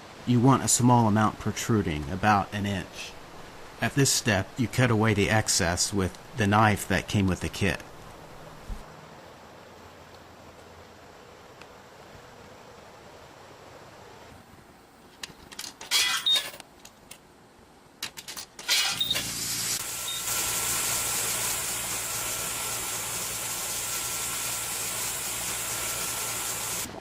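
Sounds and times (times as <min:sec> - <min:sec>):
air hissing into tire: 0:19.1 - 0:26.9.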